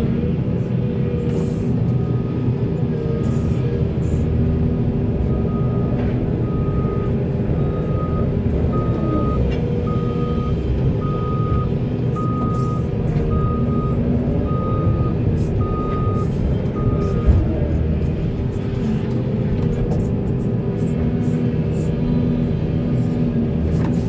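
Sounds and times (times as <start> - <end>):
excavator diesel engine running: 0.0 - 24.0
backup alarm beeping: 7.6 - 17.3.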